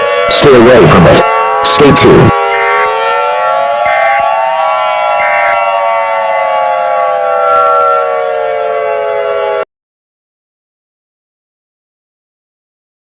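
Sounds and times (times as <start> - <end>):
siren wailing: 0.0 - 9.7.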